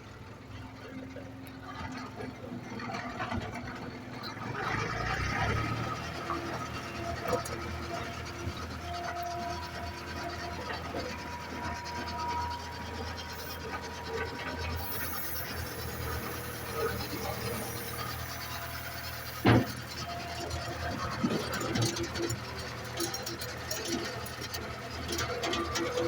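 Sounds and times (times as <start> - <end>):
skid steer engine hum: 0.0 - 26.0
thin squealing tones: 6.6 - 24.3.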